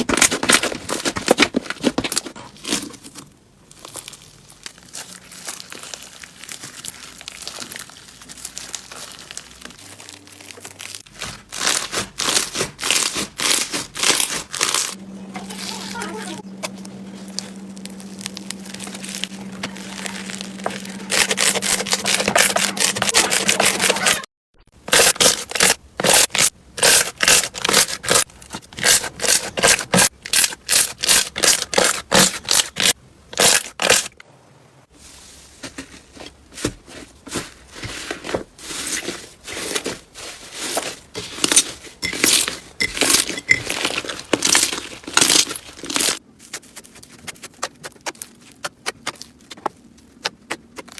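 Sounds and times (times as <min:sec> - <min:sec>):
hands squishing crunchy slime: 0:00.0 - 0:24.2, 0:36.5 - 0:50.9.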